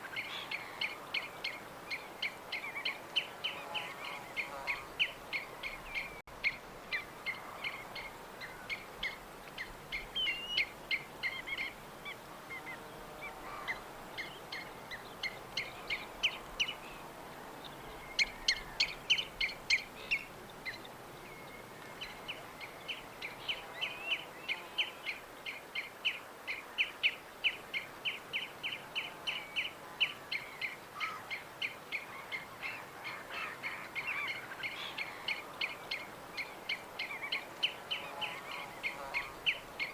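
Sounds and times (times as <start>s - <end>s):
faint background hiss: 0.0s - 39.9s
songbirds chirping: 0.0s - 39.9s.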